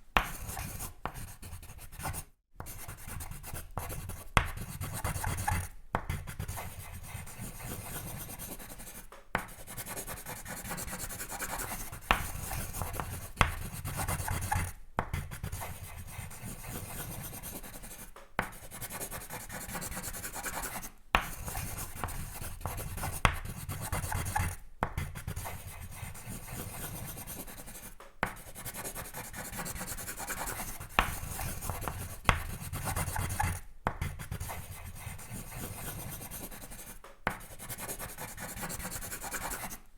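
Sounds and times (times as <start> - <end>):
drawing tool scratching paper: 0.2 - 39.8
sharp taps on paper: 9.0 - 9.6, 12.1 - 13.6, 18.1 - 18.6, 21.2 - 23.4, 27.9 - 28.5, 30.9 - 32.6, 37.0 - 37.6.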